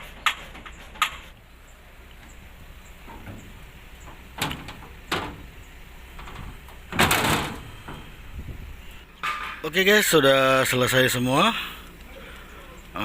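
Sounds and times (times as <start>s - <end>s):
knocks on metal panels: 3.0s - 5.6s, 6.2s - 8.1s
clattering metal bang: 3.0s - 8.6s, 9.2s - 9.8s.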